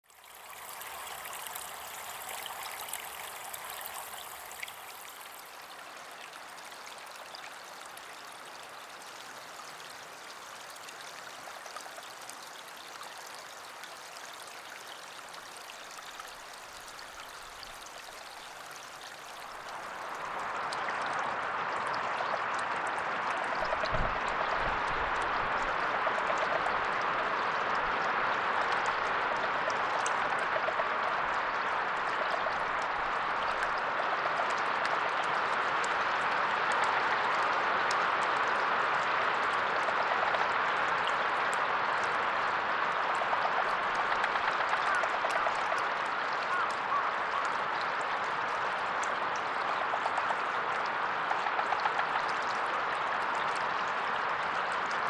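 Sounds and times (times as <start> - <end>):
flowing water rushing: 0.0 - 55.0.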